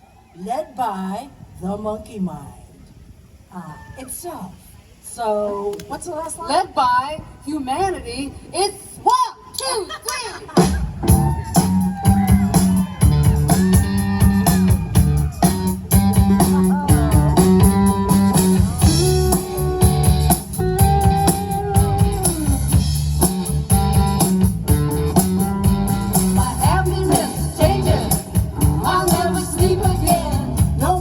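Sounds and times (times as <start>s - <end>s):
live rock band playing: 10.6s - 31.0s.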